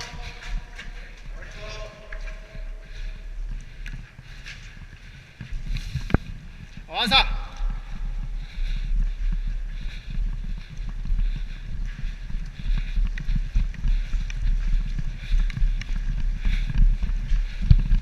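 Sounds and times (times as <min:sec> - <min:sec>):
footsteps: 0:00.0 - 0:18.0.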